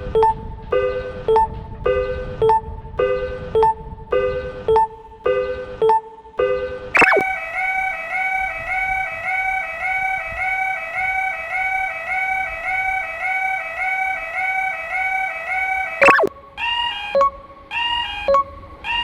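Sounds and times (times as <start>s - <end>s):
level crossing warbling alarm: 7.0s - 16.3s.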